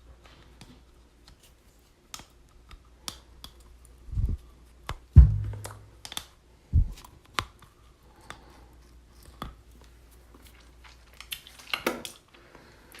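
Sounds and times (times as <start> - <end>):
dental floss clicking and snapping: 2.1 - 3.7, 6.0 - 6.3
low thump: 5.2 - 5.9.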